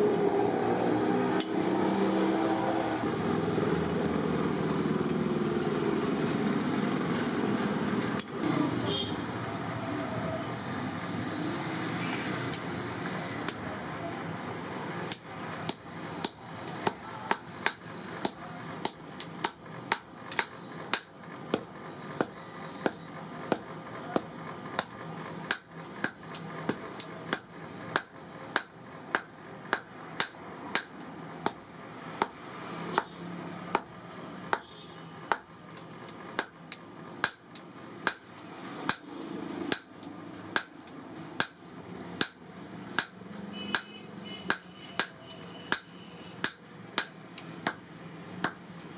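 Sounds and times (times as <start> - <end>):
steady background noise: 0.0 - 48.9
hammer striking steel on anvil: 15.1 - 24.9, 32.2 - 36.6, 42.2 - 47.8.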